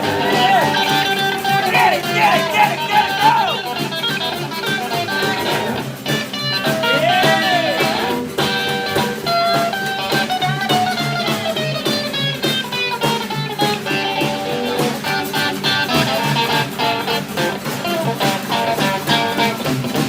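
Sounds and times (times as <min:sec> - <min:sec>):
bass line: 0:00.0 - 0:12.6
blues guitar lead: 0:00.0 - 0:20.0
drums: 0:00.0 - 0:20.0.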